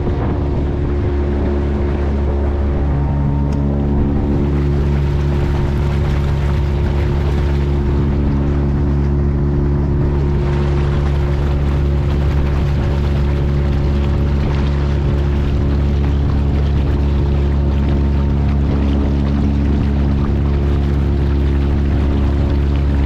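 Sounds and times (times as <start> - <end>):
motorboat engine running: 0.0 - 23.0
water noise: 0.0 - 23.0
wind noise: 0.0 - 23.0.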